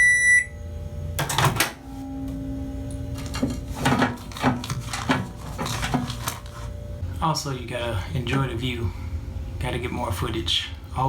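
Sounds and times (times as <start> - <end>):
electronic beep: 0.0 - 0.6
low steady hum: 0.0 - 11.0
objects being handled: 3.0 - 6.9.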